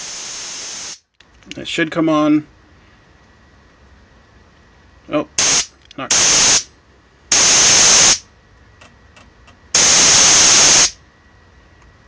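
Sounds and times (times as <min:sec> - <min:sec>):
compressed air hissing from hose: 0:00.0 - 0:01.0, 0:05.4 - 0:06.7, 0:07.3 - 0:08.2, 0:09.8 - 0:11.0.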